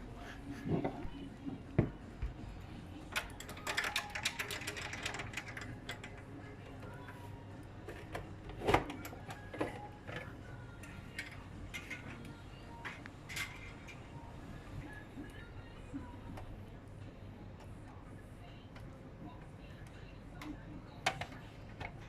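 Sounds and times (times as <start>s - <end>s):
hard objects clicking and rattling: 3.1s - 6.3s.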